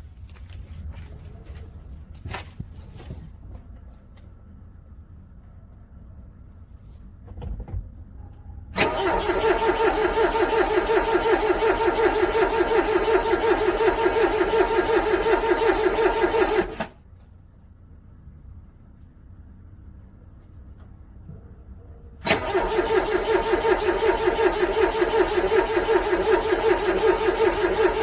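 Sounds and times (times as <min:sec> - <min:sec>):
car starter cranking engine: 0:08.8 - 0:17.0, 0:22.2 - 0:28.0.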